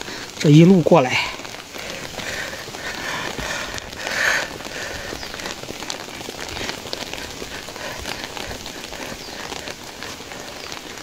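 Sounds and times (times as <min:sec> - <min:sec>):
steady rain falling: 0:00.0 - 0:11.0.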